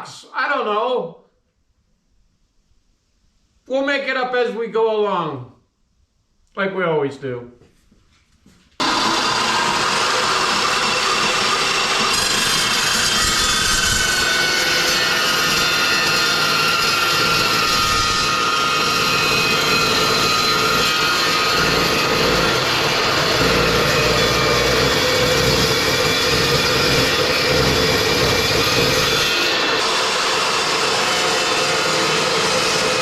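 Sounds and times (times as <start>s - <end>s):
chop saw cutting steel: 8.8s - 33.0s.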